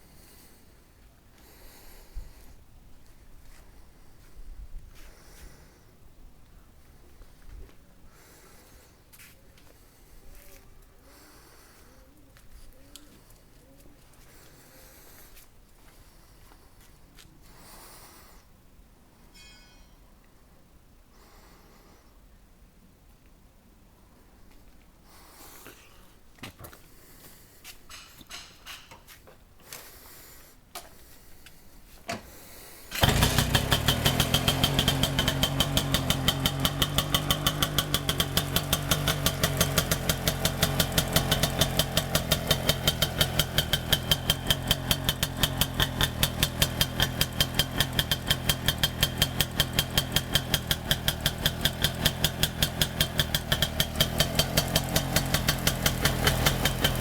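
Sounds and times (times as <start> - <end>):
two-stroke motorcycle engine idling: 32.9 - 57.0.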